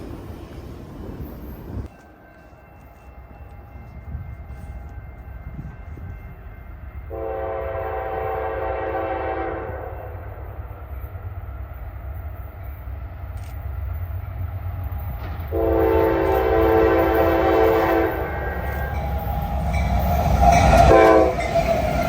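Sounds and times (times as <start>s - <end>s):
train rumble: 0.0s - 22.0s
locomotive air horn blast: 7.1s - 10.0s, 15.5s - 18.7s, 20.6s - 21.4s.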